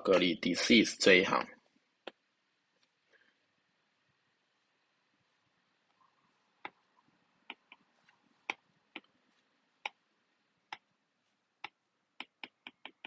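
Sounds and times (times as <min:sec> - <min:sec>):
sharp clicks at a computer: 0:02.0 - 0:02.2, 0:07.4 - 0:09.2, 0:10.7 - 0:10.9, 0:11.6 - 0:13.0.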